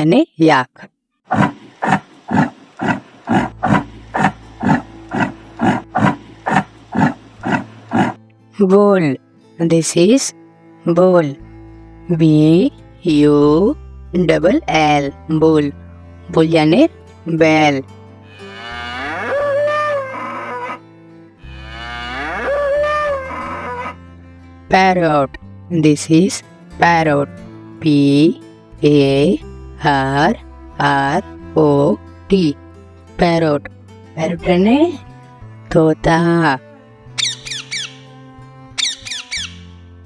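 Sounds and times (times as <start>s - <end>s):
yak calling: 1.3s - 8.2s, 16.2s - 24.0s, 34.2s - 38.1s, 38.8s - 39.7s
bull mooing: 1.8s - 8.2s, 14.2s - 24.0s.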